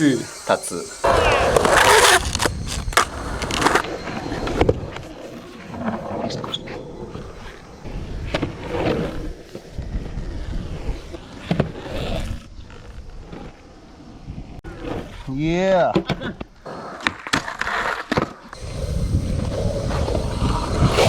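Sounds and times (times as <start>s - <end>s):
skateboard wheels rolling on concrete: 0.0s - 21.0s
skateboard clacking on ground: 1.1s - 3.9s.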